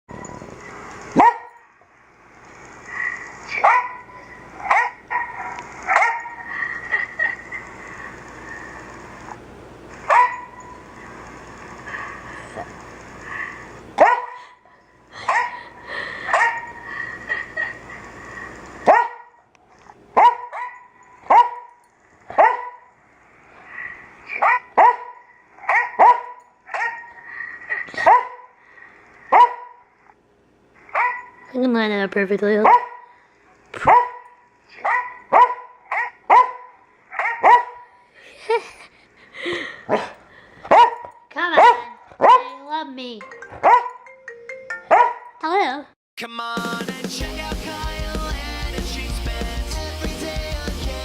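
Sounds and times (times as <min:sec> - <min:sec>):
dog barking: 0:01.2 - 0:01.6, 0:03.5 - 0:06.5, 0:10.1 - 0:10.8, 0:14.0 - 0:14.5, 0:15.2 - 0:15.7, 0:16.3 - 0:16.8, 0:18.8 - 0:19.4, 0:20.2 - 0:22.9, 0:24.3 - 0:28.6, 0:29.3 - 0:29.9, 0:30.9 - 0:31.5, 0:32.6 - 0:33.1, 0:33.8 - 0:38.0, 0:39.9 - 0:40.1, 0:40.7 - 0:42.6, 0:43.6 - 0:44.0, 0:44.9 - 0:45.4
dog yipping: 0:01.2 - 0:01.6, 0:03.5 - 0:06.4, 0:10.1 - 0:10.8, 0:14.0 - 0:14.4, 0:18.9 - 0:19.3, 0:20.2 - 0:21.7, 0:22.4 - 0:22.9, 0:24.3 - 0:27.1, 0:29.3 - 0:29.8, 0:30.9 - 0:31.5, 0:33.8 - 0:34.2, 0:34.8 - 0:37.9, 0:40.7 - 0:42.6, 0:43.6 - 0:44.0, 0:44.9 - 0:45.4.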